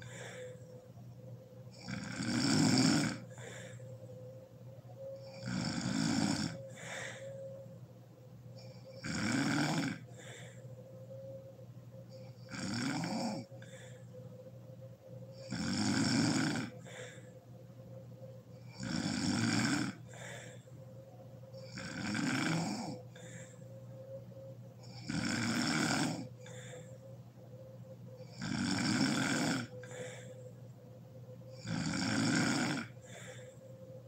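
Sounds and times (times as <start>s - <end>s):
quiet breath: 0.0s - 9.0s, 9.6s - 12.5s, 13.2s - 15.6s, 16.5s - 18.9s, 19.7s - 34.0s
woman snoring: 1.7s - 3.8s, 5.0s - 7.6s, 8.6s - 10.6s, 12.1s - 14.1s, 15.3s - 17.3s, 18.6s - 20.7s, 21.5s - 23.7s, 24.8s - 27.0s, 28.2s - 30.5s, 31.5s - 33.8s.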